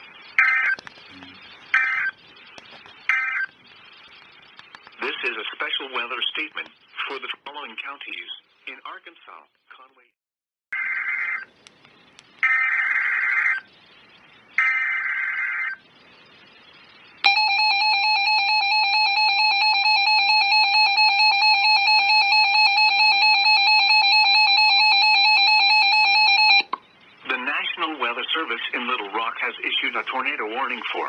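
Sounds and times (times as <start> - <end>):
screeching digital data tones: 3.0 - 3.6.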